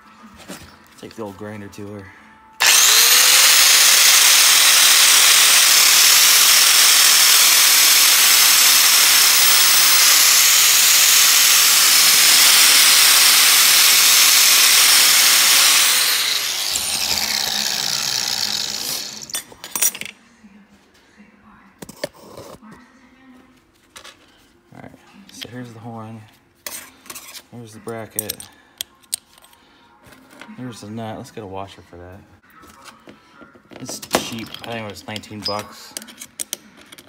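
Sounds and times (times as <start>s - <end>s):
grinder grinding steel: 2.6s - 19.5s.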